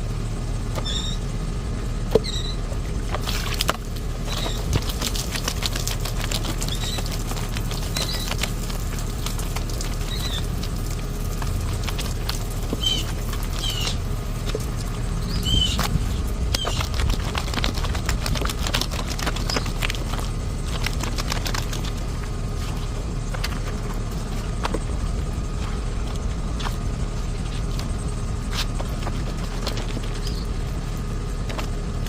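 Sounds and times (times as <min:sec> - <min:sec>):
constant low rumble: 0:00.0 - 0:32.0
clothes scrubbed by hand: 0:03.1 - 0:30.8
small wet slaps and clicks: 0:03.2 - 0:15.0, 0:15.8 - 0:22.7.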